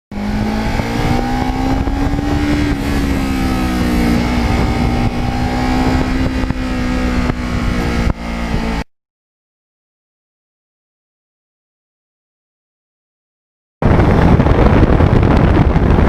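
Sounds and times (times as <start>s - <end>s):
wind rush on microphone: 0.1s - 8.8s, 13.8s - 16.0s
motorcycle engine running: 0.1s - 8.9s, 13.8s - 16.0s.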